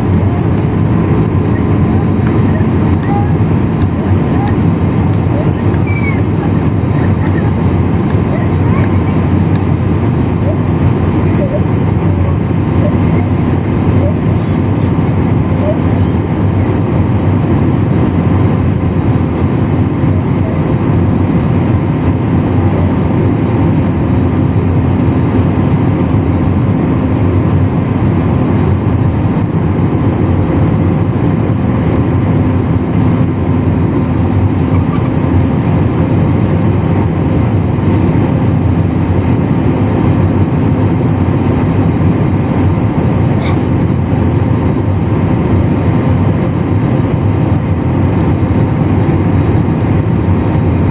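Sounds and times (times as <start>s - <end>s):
jet engine rumble in cabin: 0.0s - 50.9s.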